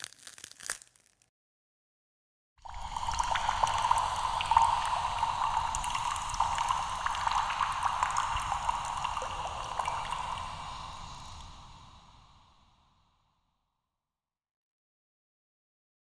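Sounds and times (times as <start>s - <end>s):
crackling fizzing noise: 2.7s - 12.0s.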